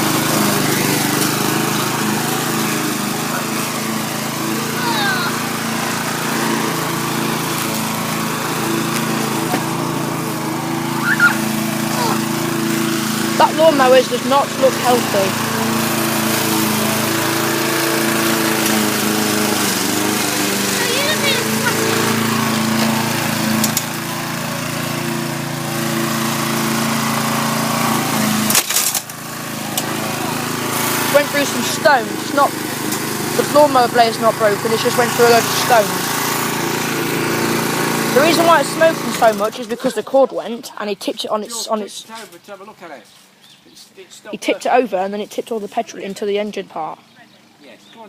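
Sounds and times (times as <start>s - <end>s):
lawn mower engine running: 0.0s - 42.2s, 44.3s - 48.0s
mower blade clattering on stones: 7.4s - 8.0s, 8.9s - 9.8s, 23.6s - 24.0s, 28.4s - 30.0s, 38.2s - 40.0s.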